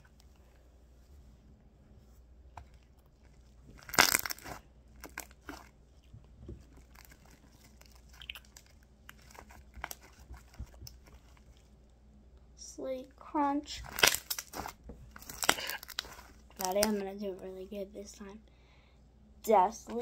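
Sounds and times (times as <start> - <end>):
slime squelching: 2.6 - 11.9, 13.3 - 17.1.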